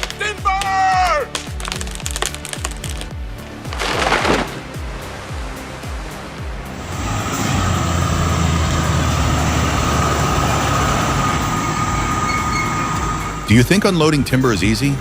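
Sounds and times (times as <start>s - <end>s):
heavy machine engine droning: 6.7s - 14.0s.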